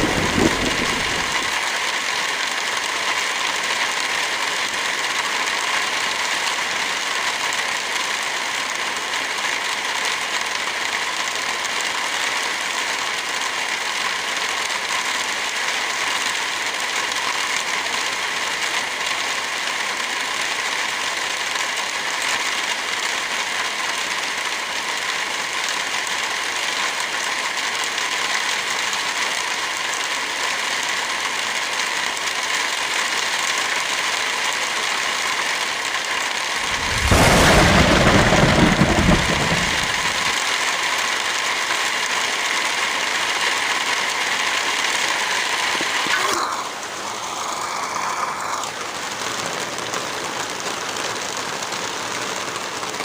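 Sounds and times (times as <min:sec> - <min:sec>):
fire crackling: 0:00.0 - 0:01.6, 0:36.5 - 0:40.6
steady rain: 0:00.0 - 0:53.0.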